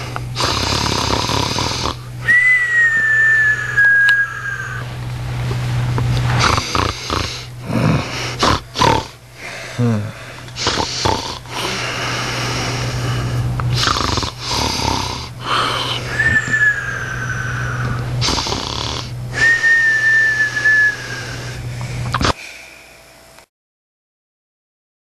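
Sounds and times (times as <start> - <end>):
man snoring heavily: 0.0 - 2.4, 6.3 - 22.4
high whistling snore tone: 0.0 - 4.9, 6.4 - 9.1, 10.6 - 21.6.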